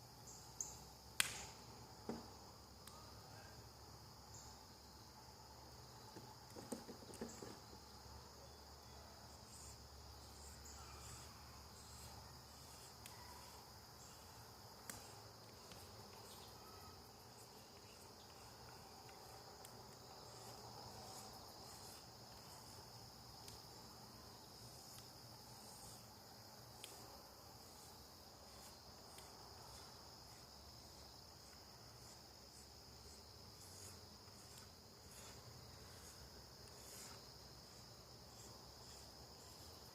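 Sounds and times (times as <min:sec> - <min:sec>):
crickets chirping: 0:00.0 - 0:39.9.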